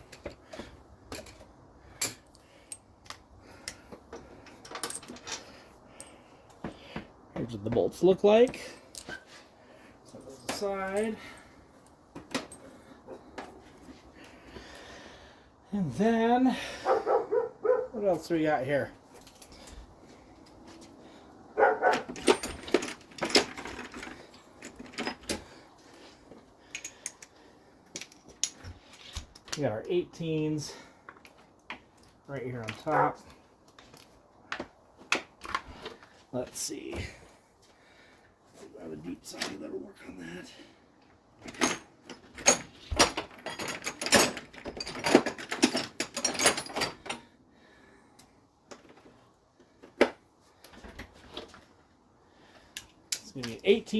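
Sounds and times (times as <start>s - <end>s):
light clicks and clinks: 10.1s - 12.7s, 26.6s - 29.7s
metal hand tools clattering: 10.2s - 12.7s, 21.6s - 25.6s, 41.4s - 47.3s
dog barking: 16.8s - 18.0s, 21.6s - 22.1s, 32.9s - 33.2s.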